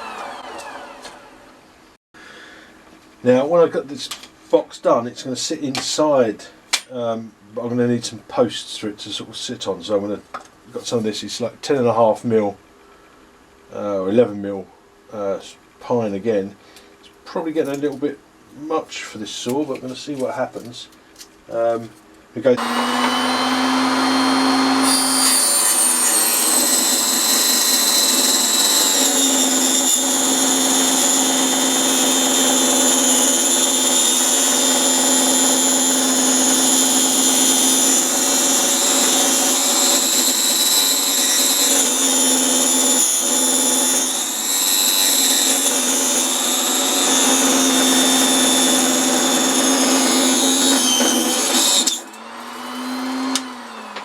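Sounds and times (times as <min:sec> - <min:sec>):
saw winding down whine: 0:00.0 - 0:01.7, 0:22.6 - 0:54.0
table saw cutting wood: 0:00.0 - 0:01.7, 0:22.6 - 0:54.0.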